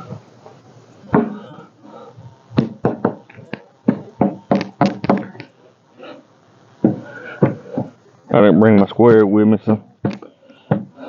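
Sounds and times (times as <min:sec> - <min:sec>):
knocks on wooden frame: 0:02.6 - 0:03.3, 0:03.9 - 0:05.4.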